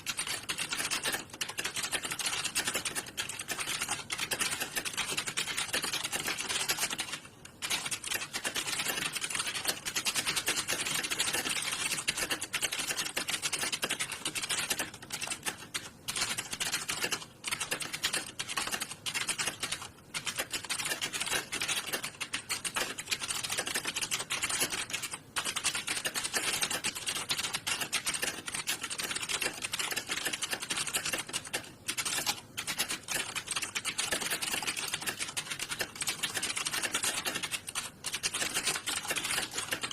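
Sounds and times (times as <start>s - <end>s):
computer keyboard typing: 0.0s - 39.9s.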